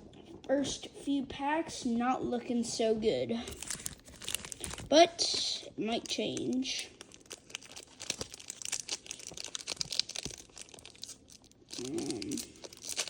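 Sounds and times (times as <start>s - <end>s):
foil wrapper crinkling and tearing: 3.5s - 13.0s
person humming: 11.8s - 12.6s.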